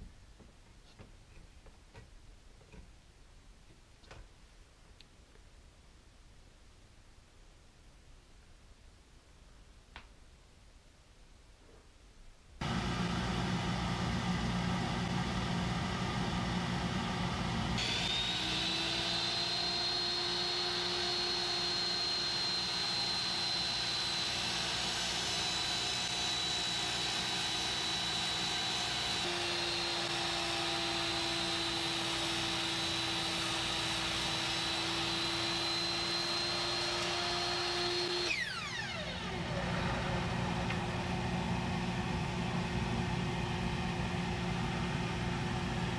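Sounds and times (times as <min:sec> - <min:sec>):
power tool motor whining: 0:12.6 - 0:40.4.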